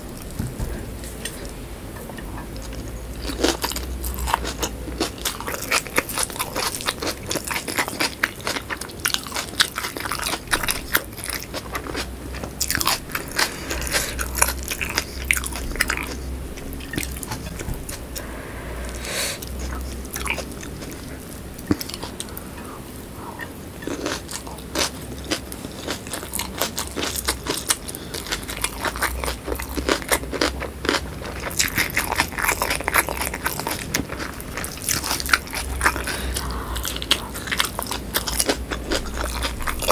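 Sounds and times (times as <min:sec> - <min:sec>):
crunchy chewing: 0:02.4 - 0:18.3, 0:19.4 - 0:39.9.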